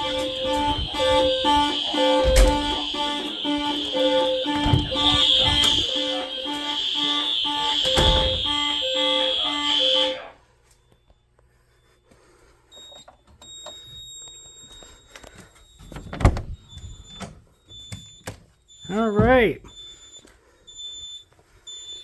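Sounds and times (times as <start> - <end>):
fire alarm horns: 0.0 - 10.8, 13.5 - 22.0.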